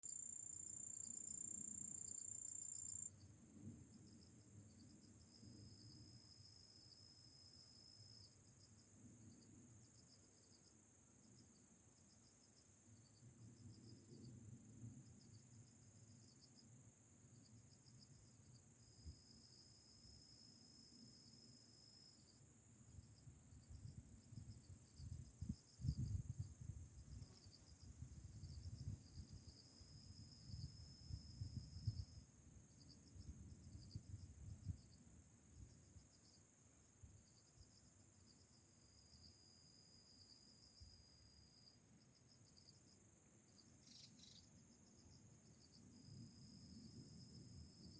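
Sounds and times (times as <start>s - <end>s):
insect trills: 0.0s - 47.9s
insects chirping: 0.0s - 47.9s
high-pitched insect drone: 43.8s - 45.0s.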